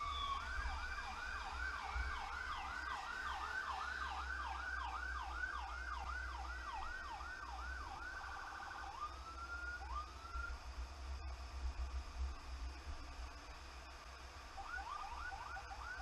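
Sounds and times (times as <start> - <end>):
emergency siren yelping: 0.0 - 10.6, 14.6 - 16.0.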